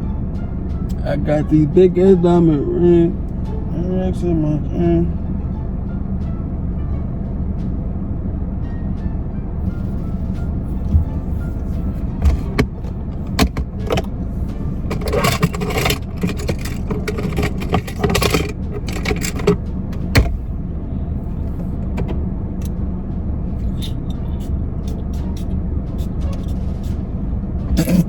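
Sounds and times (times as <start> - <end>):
car cabin rumble: 9.6 - 24.5, 27.6 - 28.0
jangling and rustling: 10.9 - 20.6.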